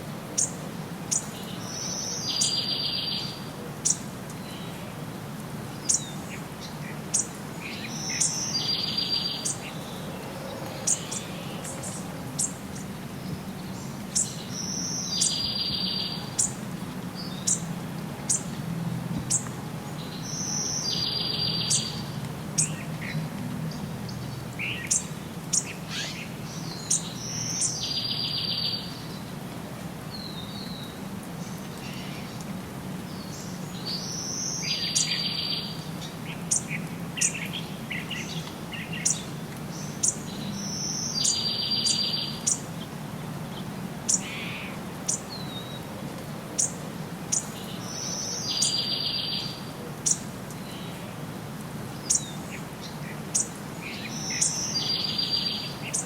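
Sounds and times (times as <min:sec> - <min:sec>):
birds chirping: 0:05.7 - 0:16.6, 0:17.2 - 0:29.3, 0:33.0 - 0:45.8, 0:46.6 - 0:51.2, 0:51.9 - 0:56.0.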